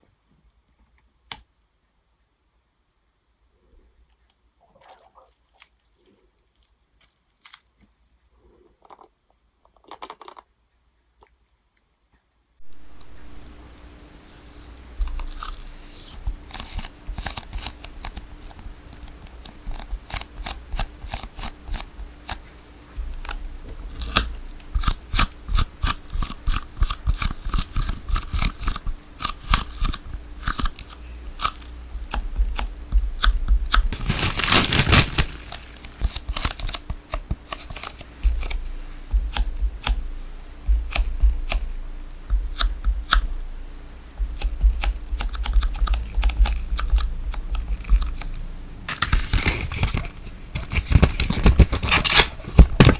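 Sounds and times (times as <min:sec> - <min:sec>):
sticky tape snipping and crackling: 0:14.6 - 0:43.5, 0:44.1 - 0:52.9
tape tearing: 0:15.0 - 0:22.5, 0:23.1 - 0:38.7, 0:44.8 - 0:52.9.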